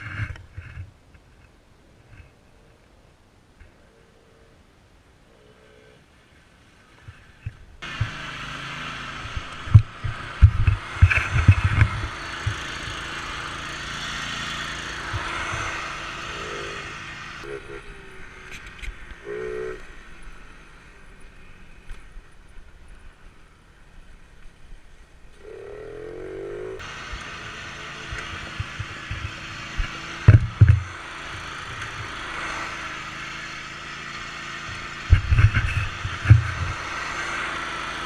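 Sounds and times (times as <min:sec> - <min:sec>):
small engine running: 0:07.8 - 0:24.5, 0:25.3 - 0:38.0.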